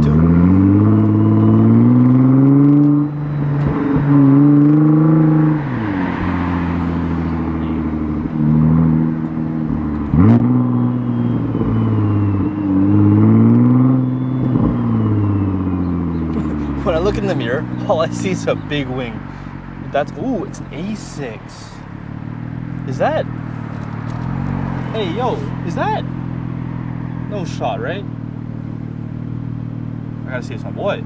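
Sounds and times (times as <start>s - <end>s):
car engine accelerating through gears: 0.0s - 31.0s
sharp engine rev: 22.8s - 27.5s.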